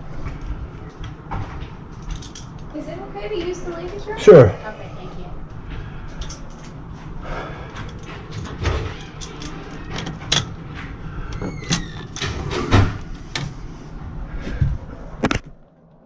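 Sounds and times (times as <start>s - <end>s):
steady low hum: 0.0s - 16.0s
tools knocking and rattling: 1.4s - 2.6s, 7.7s - 13.6s.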